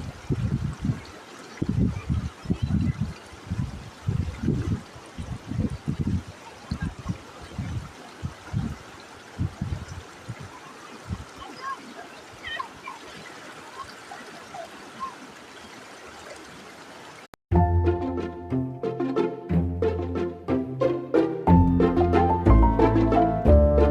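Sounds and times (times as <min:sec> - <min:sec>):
waterfall rushing: 0:00.0 - 0:17.3.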